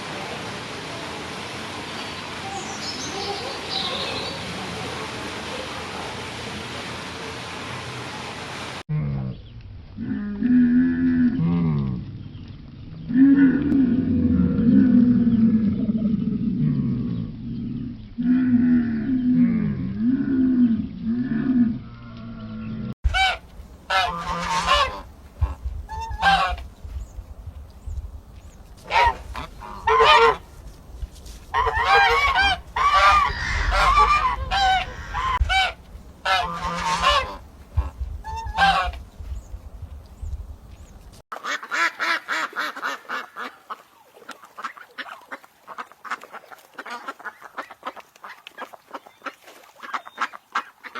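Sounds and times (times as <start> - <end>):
deep low bending bird call: 8.9 - 30.4, 31.6 - 41.0
waterfowl honking: 23.1 - 26.7, 28.8 - 30.5, 31.5 - 39.0, 41.4 - 50.9.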